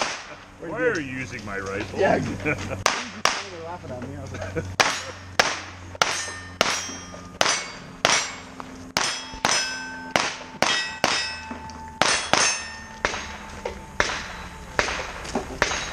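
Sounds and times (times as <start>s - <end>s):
gunshots: 0.0s - 0.4s, 2.8s - 3.5s, 4.8s - 15.9s
steel target clanging: 4.8s - 15.9s.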